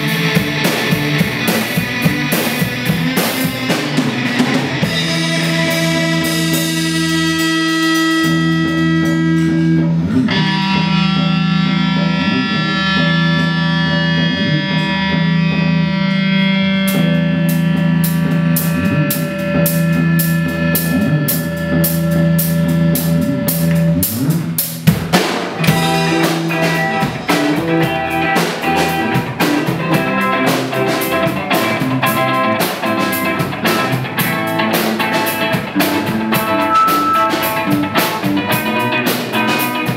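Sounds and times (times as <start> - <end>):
drum kit with busy cymbals: 0.0 - 39.9
held rock guitar chords: 0.0 - 39.9
steady low bass: 0.0 - 39.9.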